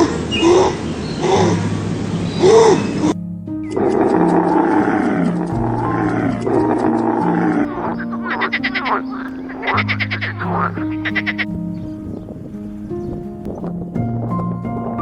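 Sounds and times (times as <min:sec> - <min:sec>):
rapid pulsing animal calls: 0:00.0 - 0:11.5
background music: 0:01.2 - 0:15.0.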